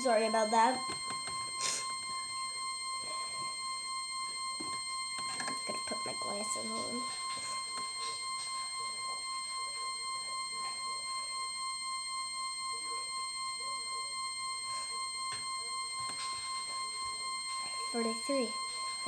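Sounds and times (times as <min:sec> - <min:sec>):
high-pitched electronic tone: 0:00.0 - 0:11.9.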